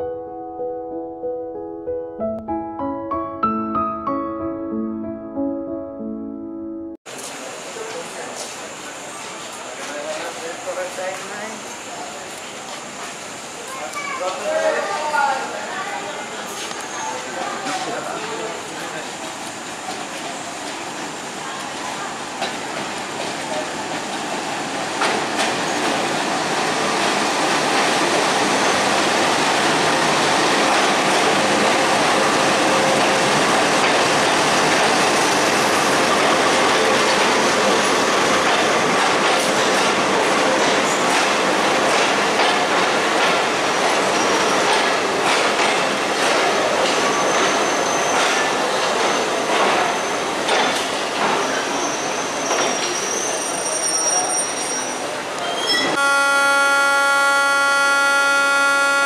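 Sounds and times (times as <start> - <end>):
train rumbling on rails: 7.1 - 59.0
rail-joint clicks: 38.4 - 51.6
high wheel squeal: 51.5 - 56.2.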